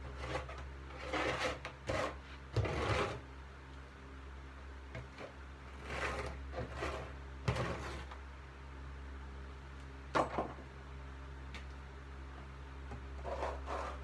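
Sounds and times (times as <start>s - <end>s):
rustling and scraping: 5.0s - 8.2s, 13.1s - 14.0s.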